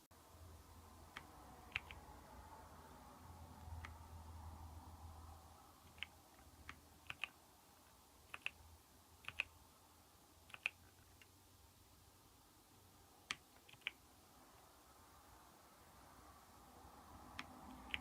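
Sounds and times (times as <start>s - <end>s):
mechanical keyboard keystroke clicks: 1.1s - 2.0s, 5.9s - 7.4s, 8.3s - 8.6s, 9.2s - 9.5s, 10.5s - 10.9s, 13.2s - 14.0s, 17.4s - 18.0s.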